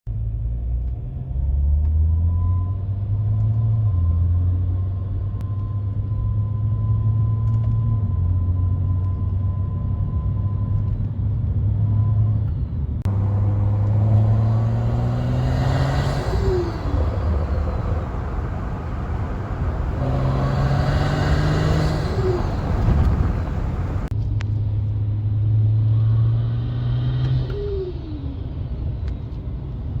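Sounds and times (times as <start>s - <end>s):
car engine pulling hard: 13.1s - 24.1s
diverter valve howl: 13.1s - 24.1s.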